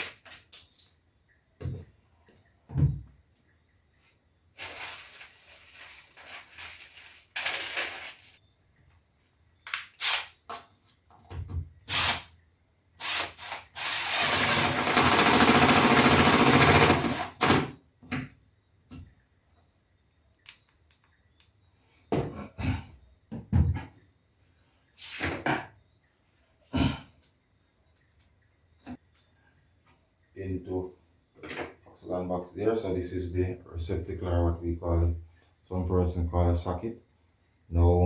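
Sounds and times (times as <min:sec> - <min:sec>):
power tool running: 0:11.9 - 0:12.2, 0:13.0 - 0:17.7.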